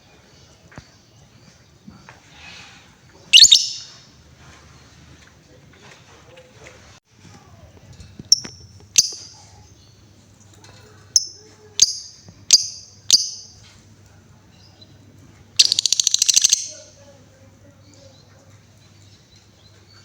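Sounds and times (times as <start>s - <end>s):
lovebird chirping and trilling: 3.3s - 4.0s, 8.3s - 9.4s, 11.2s - 13.6s, 15.6s - 16.9s.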